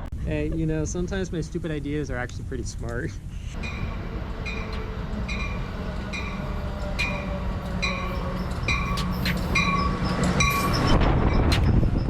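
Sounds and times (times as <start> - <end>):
train rumble: 0.0 - 12.0
locomotive bell dinging: 3.6 - 11.5
sharp clanks: 3.6 - 11.8.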